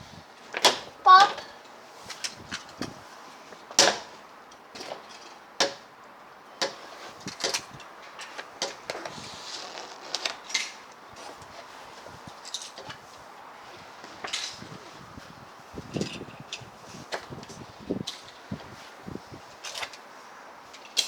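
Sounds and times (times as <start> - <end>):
toy cars clicking and tapping: 20.7 - 21.0.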